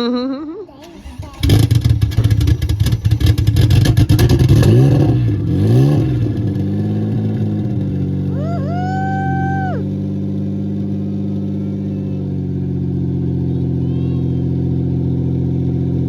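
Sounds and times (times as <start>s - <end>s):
car engine cold starting and revving: 0.8s - 8.6s, 9.7s - 13.8s.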